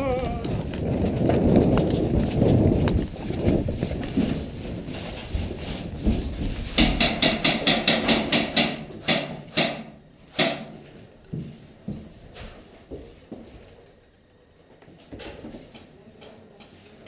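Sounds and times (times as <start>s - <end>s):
running footsteps: 0.0s - 9.1s
airsoft gun shots: 7.1s - 10.8s.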